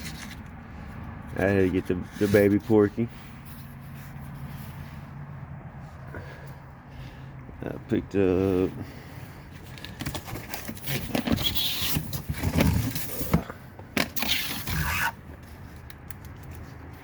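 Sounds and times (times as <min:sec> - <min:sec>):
handling noise scraping and knocks: 0:00.0 - 0:05.0, 0:09.5 - 0:17.0.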